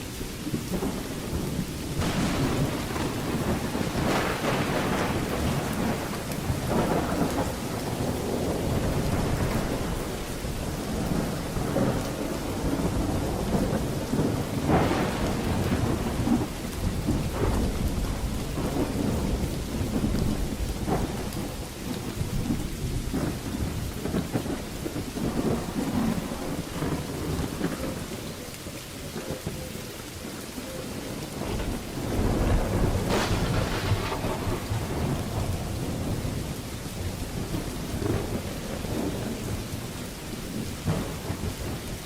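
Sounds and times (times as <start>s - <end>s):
crackling thunder peals: 0.0s - 42.0s
heavy rain: 0.0s - 42.0s
rolling thunder: 0.0s - 42.0s.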